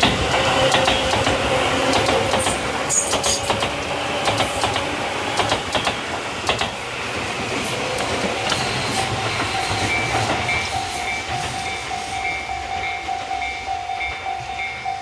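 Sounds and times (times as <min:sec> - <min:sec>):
train wheels clacking over rail joints: 0:00.0 - 0:14.8
train running rumble: 0:00.0 - 0:15.0
level crossing warning bell: 0:09.1 - 0:15.0.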